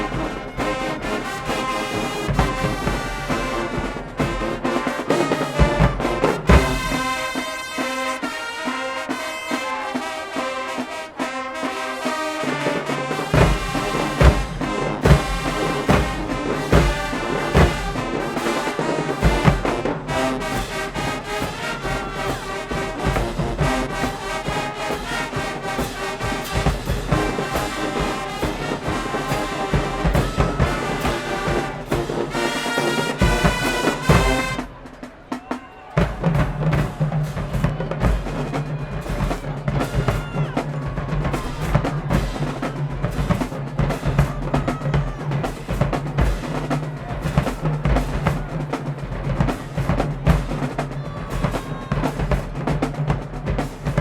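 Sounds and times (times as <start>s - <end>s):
drumline hits: 0.0s - 54.0s
marching band brass: 0.0s - 54.0s
bass drum strokes: 13.3s - 18.4s.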